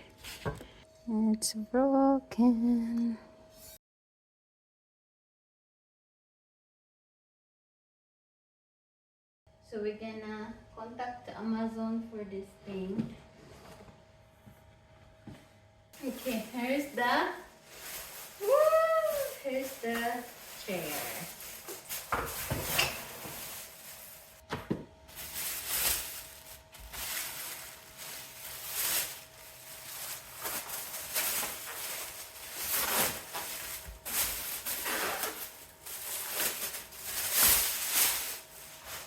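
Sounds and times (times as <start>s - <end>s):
cardboard and wrapping rustling: 16.0s - 39.0s.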